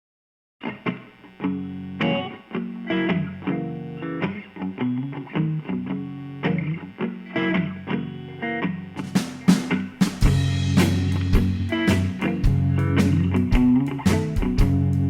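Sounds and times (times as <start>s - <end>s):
distorted electric guitar riff: 0.6s - 15.0s
drum and cymbal hits: 9.0s - 15.0s.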